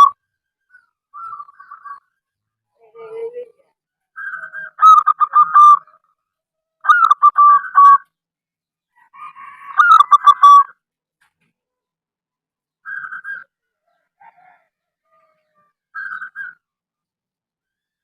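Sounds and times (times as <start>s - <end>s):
dove cooing: 2.8s - 6.0s, 6.9s - 8.0s.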